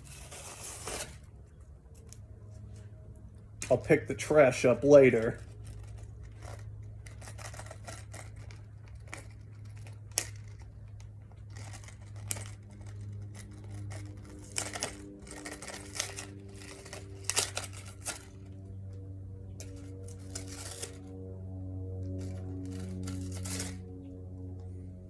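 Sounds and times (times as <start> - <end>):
steady low hum: 0.0 - 25.0
small objects clicking and knocking: 5.2 - 18.4, 19.6 - 21.1.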